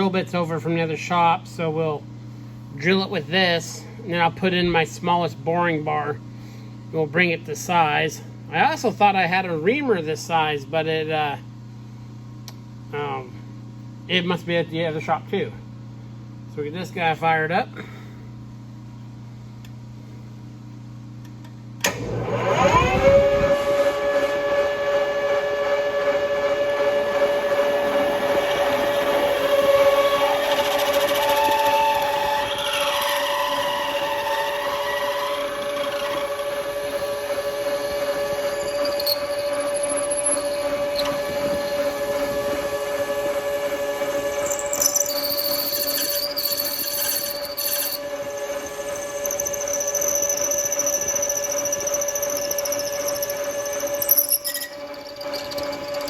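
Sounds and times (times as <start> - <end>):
metal lathe whining: 21.8 - 56.0
drill bit squealing in metal: 30.0 - 42.9, 44.1 - 56.0.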